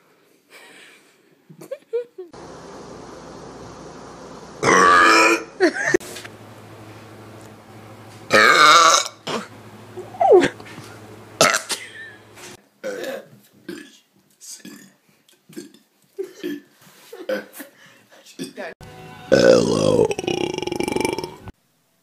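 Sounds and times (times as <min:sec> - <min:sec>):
person belching loudly: 0:04.6 - 0:05.5, 0:08.3 - 0:09.5, 0:11.4 - 0:11.7, 0:19.3 - 0:21.5.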